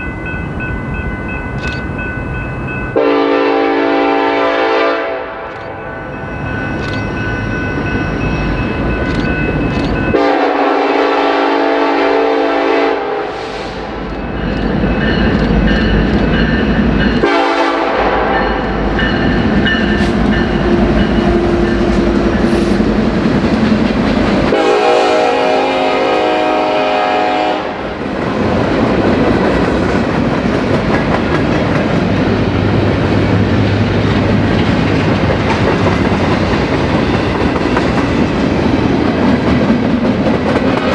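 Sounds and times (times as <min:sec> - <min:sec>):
train wheels running on rails: 0:00.0 - 0:40.9
locomotive air horn blasts: 0:03.0 - 0:05.5, 0:10.2 - 0:14.0, 0:17.2 - 0:18.5, 0:24.5 - 0:27.9.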